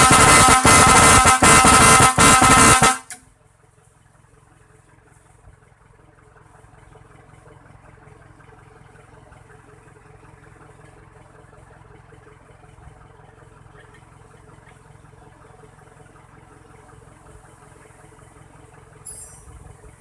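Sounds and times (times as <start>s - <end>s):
loud wavering horn blast: 0.0s - 3.2s.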